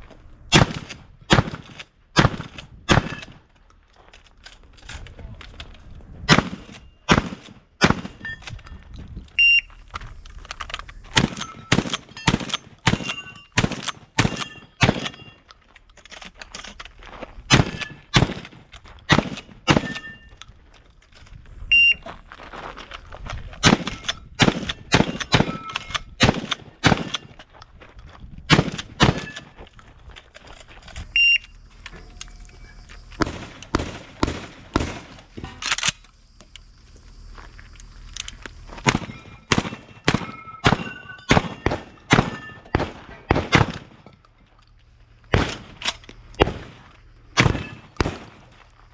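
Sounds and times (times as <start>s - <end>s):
shotgun shots: 0.5s - 3.4s, 6.3s - 8.2s, 11.1s - 15.4s, 17.5s - 20.2s, 23.6s - 27.4s, 28.5s - 29.5s, 33.2s - 35.9s, 38.8s - 44.1s, 45.3s - 48.5s
short high electronic beep: 9.4s - 9.8s.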